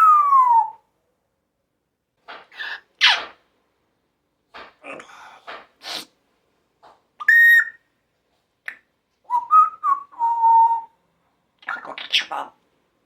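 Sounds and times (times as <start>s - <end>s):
parrot calling and chattering: 2.3s - 3.4s, 7.2s - 7.8s, 11.6s - 12.6s
parrot whistles: 7.2s - 7.8s.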